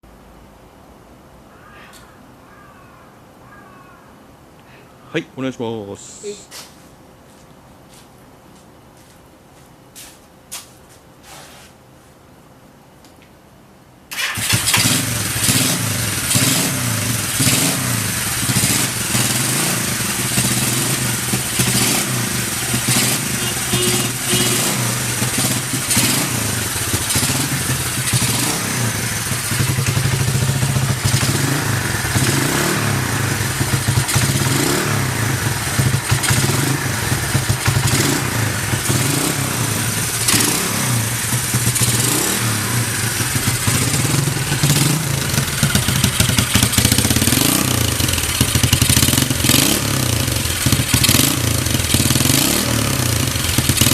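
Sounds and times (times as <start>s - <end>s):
motorcycle engine idling: 14.2s - 53.9s.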